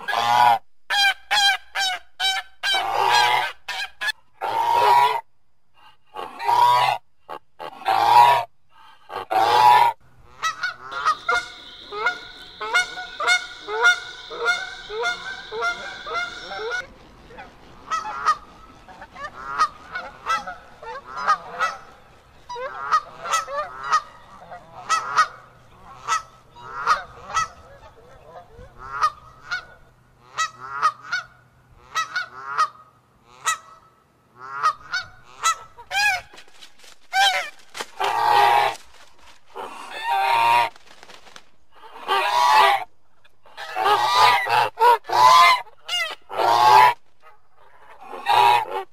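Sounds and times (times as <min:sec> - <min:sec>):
faint low hum: 0:05.3 - 0:48.9
geese honking: 0:06.2 - 0:32.8, 0:37.1 - 0:38.8, 0:39.5 - 0:40.8, 0:41.8 - 0:48.9.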